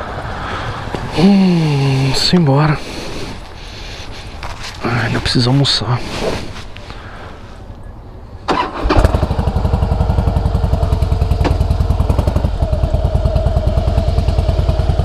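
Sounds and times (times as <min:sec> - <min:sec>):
motorcycle engine starting and idling: 0:08.4 - 0:15.0.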